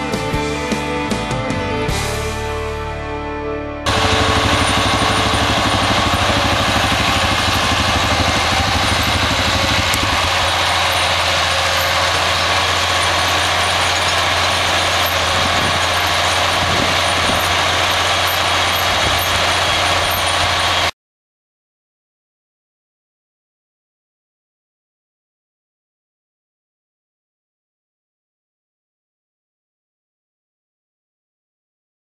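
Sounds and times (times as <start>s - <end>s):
tractor engine and machinery: 3.9s - 20.9s.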